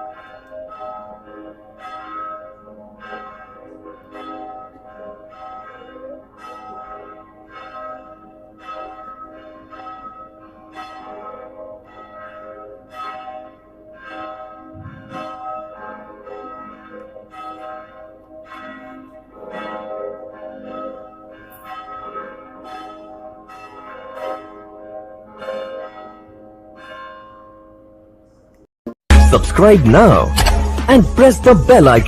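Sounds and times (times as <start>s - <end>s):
church bell ringing: 0.0s - 28.5s
low rumble: 14.8s - 15.2s.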